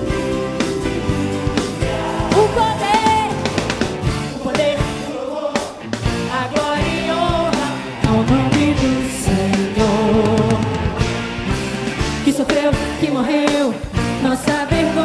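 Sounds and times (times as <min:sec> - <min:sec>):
pop-rock band playing: 0:00.0 - 0:15.0
lead singer singing: 0:01.7 - 0:03.6, 0:04.2 - 0:11.2, 0:12.2 - 0:15.0.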